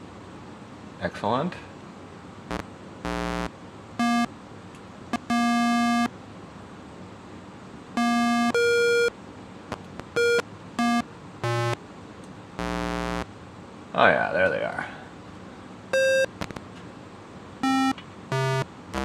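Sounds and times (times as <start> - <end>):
electronic keyboard notes: 2.5 - 4.3, 5.2 - 6.1, 8.0 - 9.1, 9.7 - 11.8, 12.6 - 13.2, 16.0 - 16.5, 17.6 - 19.0.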